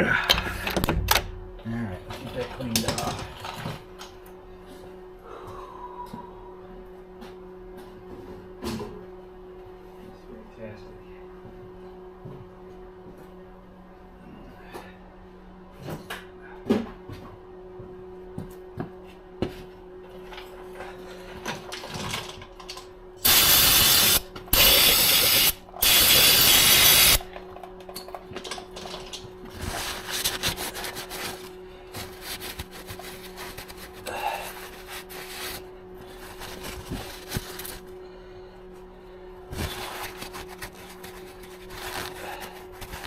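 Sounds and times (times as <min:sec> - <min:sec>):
aerosol spray hissing: 0:23.2 - 0:27.2.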